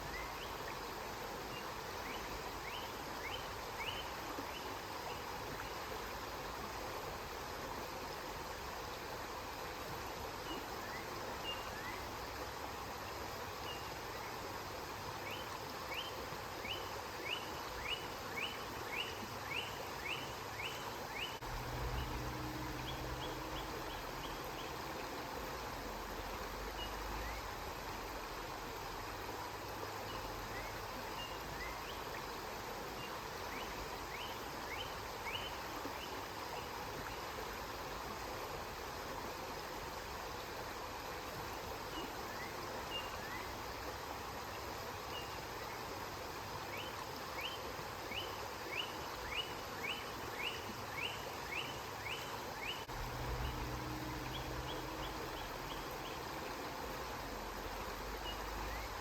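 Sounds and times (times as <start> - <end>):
river water rushing: 0.0 - 59.0
low rumble: 21.4 - 24.2, 52.9 - 55.9.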